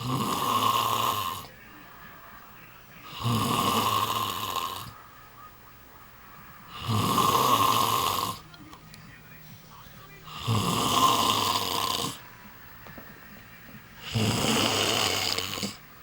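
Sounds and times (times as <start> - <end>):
baby snoring: 0.0 - 1.6, 3.1 - 5.0, 6.7 - 8.4, 10.3 - 12.2, 14.0 - 15.8.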